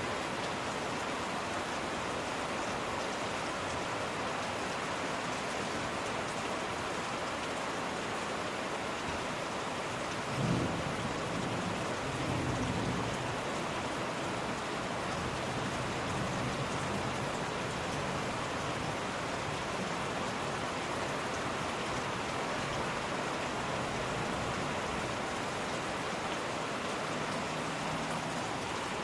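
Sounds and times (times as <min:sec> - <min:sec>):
steady rain falling: 0:00.0 - 0:29.0.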